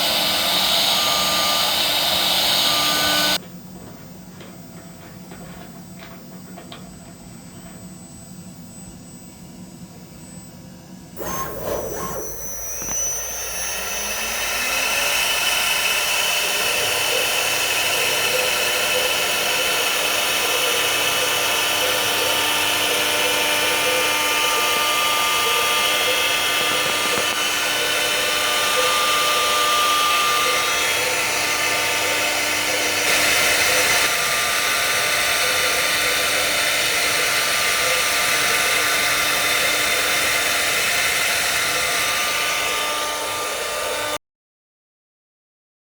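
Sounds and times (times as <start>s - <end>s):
milling spindle whining: 0.0s - 3.4s, 11.2s - 44.2s.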